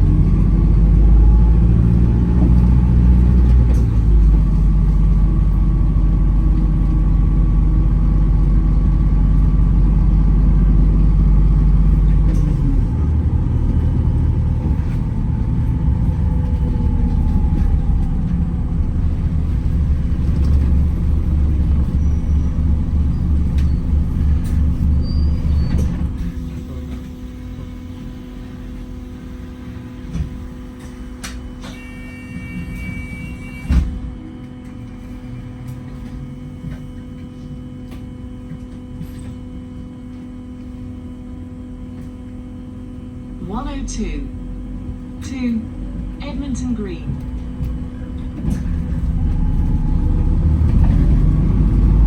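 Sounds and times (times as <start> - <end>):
bus drivetrain low rumble: 0.0 - 52.0.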